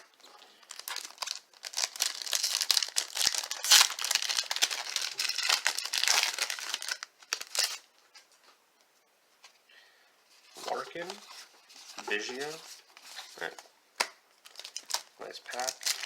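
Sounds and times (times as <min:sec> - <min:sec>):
plastic wrapper crinkling and tearing: 0:00.0 - 0:08.0, 0:14.4 - 0:16.0.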